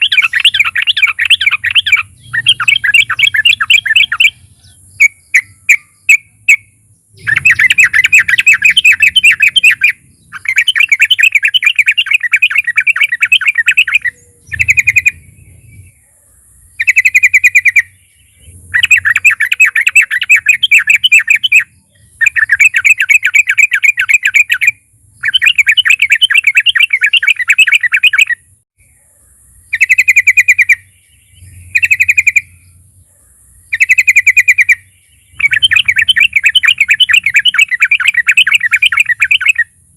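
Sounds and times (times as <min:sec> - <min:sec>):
bulbul singing chattering notes: 0:00.0 - 0:16.0, 0:16.8 - 0:28.4, 0:29.7 - 0:32.7, 0:33.7 - 0:39.8.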